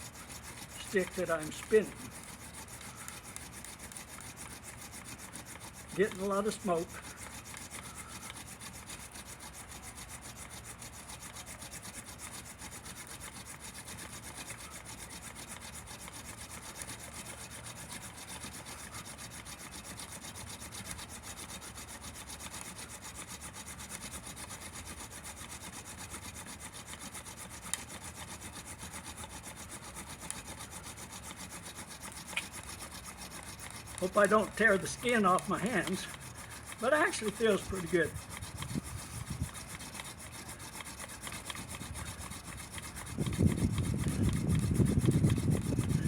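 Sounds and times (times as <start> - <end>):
wooden spindle rubbing: 0.0 - 46.0.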